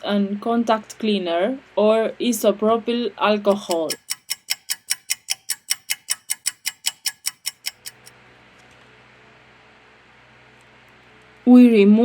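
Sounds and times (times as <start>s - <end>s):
faint hiss and hum: 0.0s - 3.9s, 8.1s - 12.0s
clock-like ticking: 3.5s - 8.1s.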